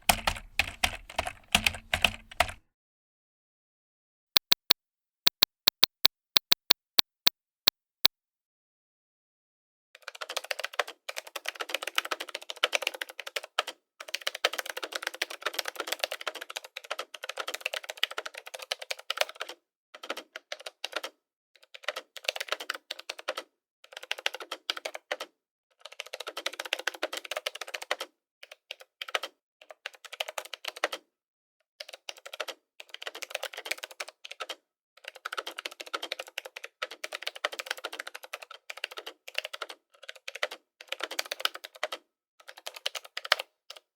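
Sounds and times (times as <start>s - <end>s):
keyboard typing clicks: 0.0s - 2.6s, 4.4s - 7.3s.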